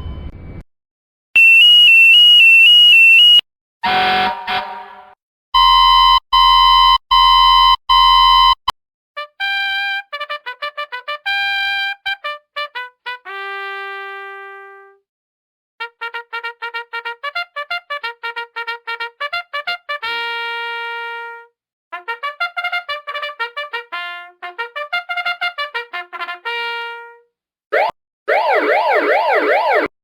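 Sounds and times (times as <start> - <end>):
brass fanfare: 3.8 - 5.2, 9.2 - 14.9, 15.8 - 21.4, 22.0 - 27.2.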